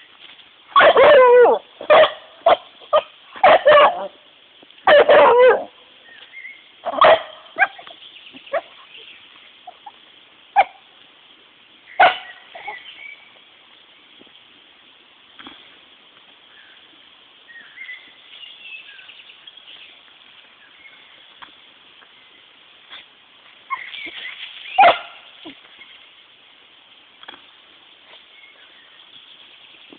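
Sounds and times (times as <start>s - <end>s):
dog barking: 0.8s - 4.2s, 4.8s - 5.8s, 6.8s - 7.9s, 10.6s - 10.8s, 12.0s - 12.8s, 24.8s - 25.6s.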